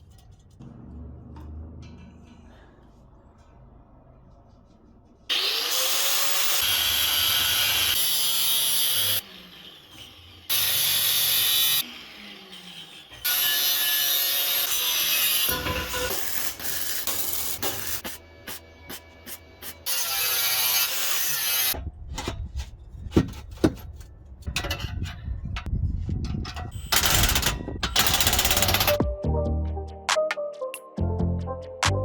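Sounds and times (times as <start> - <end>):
power tool running: 5.3 - 18.0, 26.9 - 29.0.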